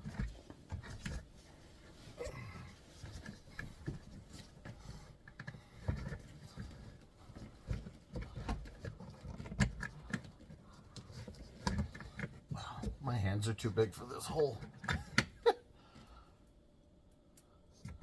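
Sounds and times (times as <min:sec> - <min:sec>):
hand rustling and scraping: 0:00.0 - 0:13.0.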